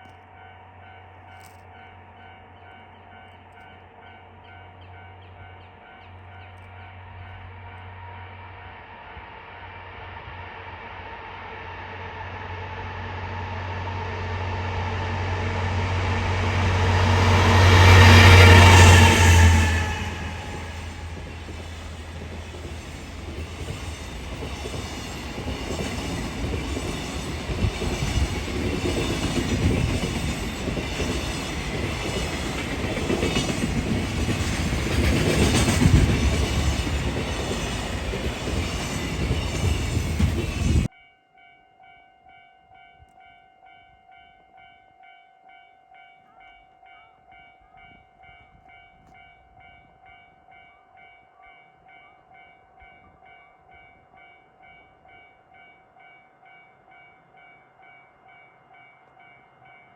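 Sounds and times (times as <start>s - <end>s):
train wheels clattering on rails: 15.2s - 40.9s
level crossing warning bell: 15.6s - 59.9s.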